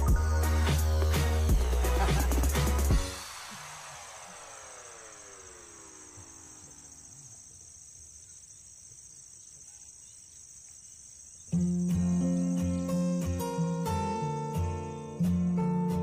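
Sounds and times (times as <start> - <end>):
crickets shrilling: 3.1 - 13.3
guitar music: 11.6 - 16.0.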